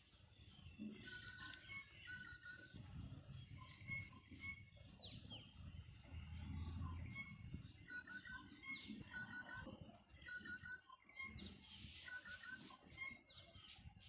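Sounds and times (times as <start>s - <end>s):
small birds chirping: 0.0s - 14.0s
low rumble: 5.4s - 7.7s.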